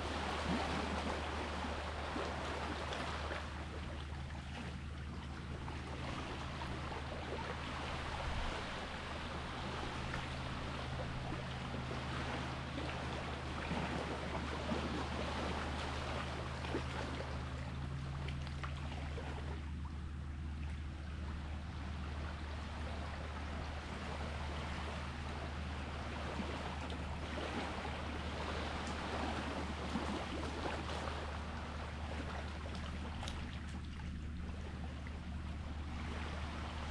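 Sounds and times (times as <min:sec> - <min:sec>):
low motor hum: 0:00.0 - 0:36.9
seawater washing and splashing: 0:05.5 - 0:20.6.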